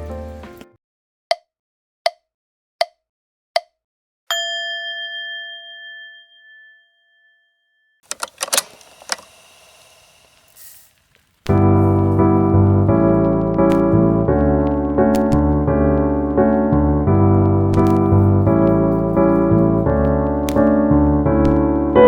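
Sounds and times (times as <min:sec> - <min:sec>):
bell-like timer chime: 0:04.3 - 0:07.9
clatter of clicks: 0:08.1 - 0:09.3.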